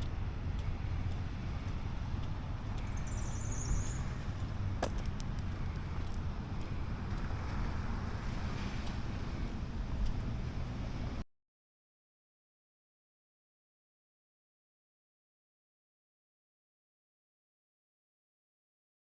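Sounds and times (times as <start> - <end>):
train rumble inside coach: 0.0 - 11.2.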